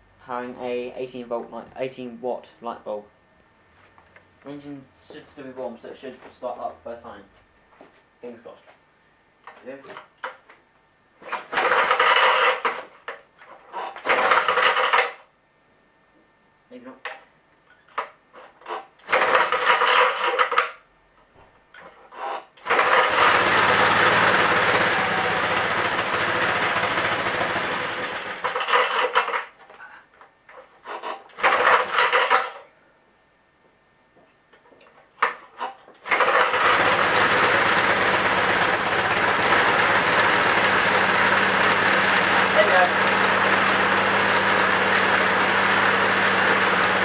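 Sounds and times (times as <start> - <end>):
small engine starting and running: 11.3 - 12.7, 14.0 - 15.1, 19.0 - 20.6, 22.6 - 29.4, 31.0 - 32.5, 36.0 - 47.0.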